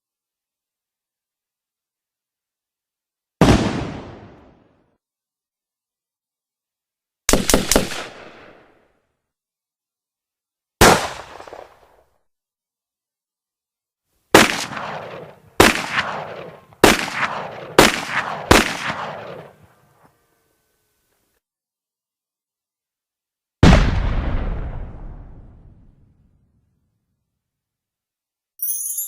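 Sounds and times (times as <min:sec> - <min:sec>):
gunshots with echo: 0:07.3 - 0:08.7, 0:14.4 - 0:19.7.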